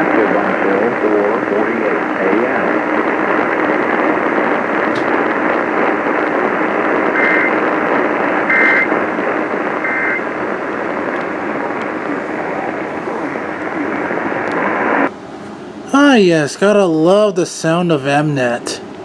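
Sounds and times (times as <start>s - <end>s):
radio static hiss: 0.0s - 19.0s
two-tone data bursts: 7.1s - 7.6s, 8.4s - 9.0s, 9.8s - 10.3s.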